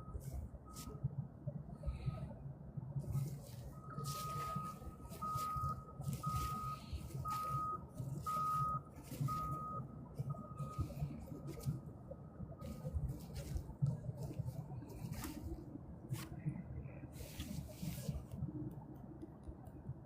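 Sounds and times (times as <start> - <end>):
vehicle reversing alarm beeping: 0.0 - 2.4, 3.0 - 15.6
low rumble: 0.0 - 20.0.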